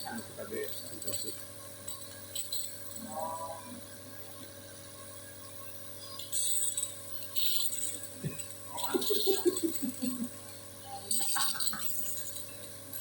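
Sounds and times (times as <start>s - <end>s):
faint steady hum: 0.0s - 13.0s
short hissing bursts: 6.2s - 10.2s.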